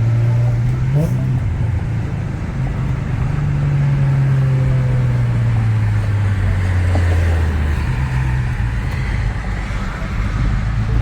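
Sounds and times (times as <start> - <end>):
road noise: 0.0 - 11.0.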